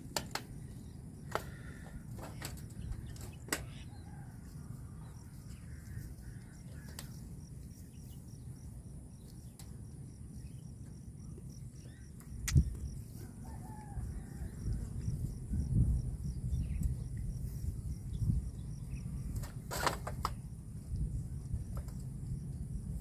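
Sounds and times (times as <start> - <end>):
faint bird calls: 0.6 - 8.1
steady low rumble: 2.6 - 19.6, 20.4 - 23.0.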